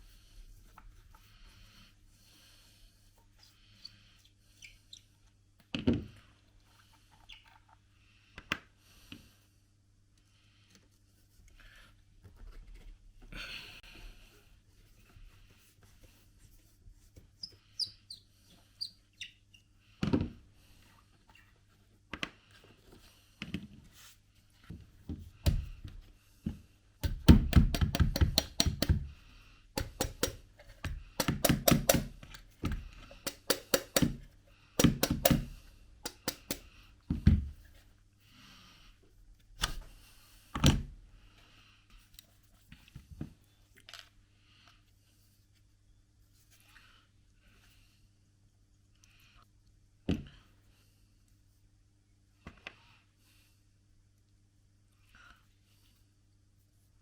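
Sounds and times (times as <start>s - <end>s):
knocks and clicks of rifle parts: 27.0s - 29.1s, 29.8s - 37.6s.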